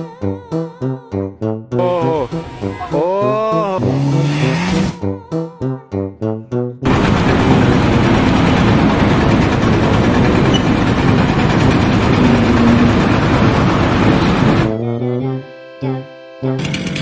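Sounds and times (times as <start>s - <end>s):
loud engine running: 6.8s - 14.8s, 16.6s - 17.0s.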